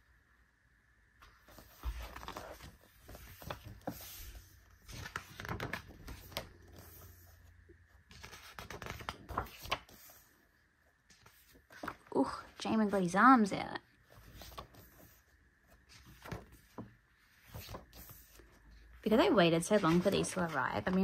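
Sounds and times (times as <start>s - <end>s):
paper and plastic rustling: 15.8s - 21.0s.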